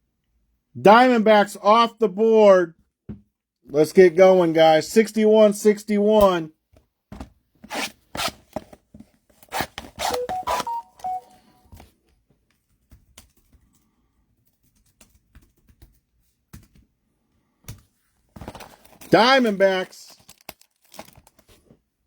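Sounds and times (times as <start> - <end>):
wrappers crinkling and tearing: 19.8 - 21.6.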